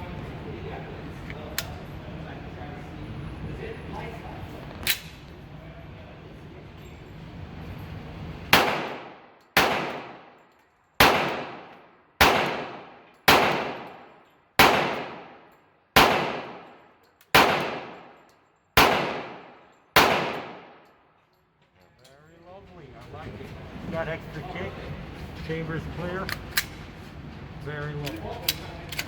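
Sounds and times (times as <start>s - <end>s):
pistol shots echoing: 8.5s - 10.4s, 11.0s - 20.9s.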